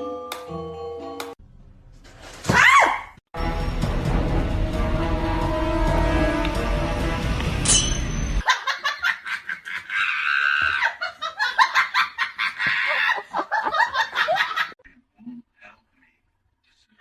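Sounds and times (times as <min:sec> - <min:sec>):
music: 0:00.0 - 0:01.4, 0:03.4 - 0:08.4
person laughing hard: 0:08.4 - 0:14.8.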